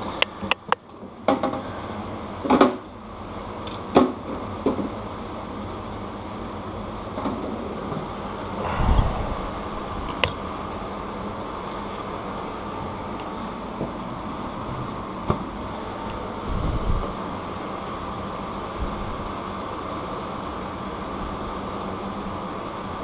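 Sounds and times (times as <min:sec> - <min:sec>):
steady background hiss: 0:00.0 - 0:23.0
bicycle parts clicking and knocking: 0:10.1 - 0:10.5.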